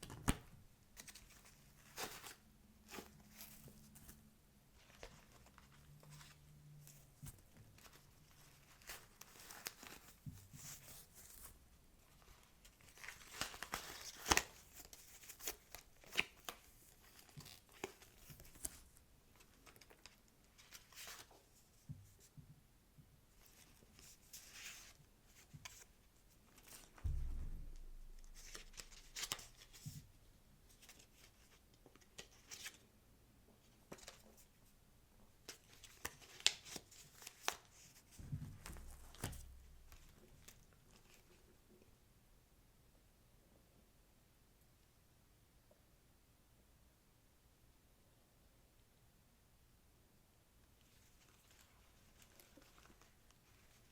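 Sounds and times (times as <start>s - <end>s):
soft thump: 27.0s - 28.8s, 38.2s - 39.6s.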